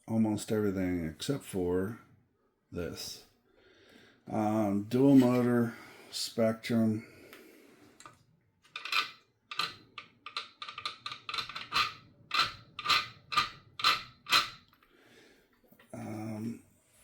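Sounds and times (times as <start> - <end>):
irregular clicks and clatters: 8.0 - 14.9.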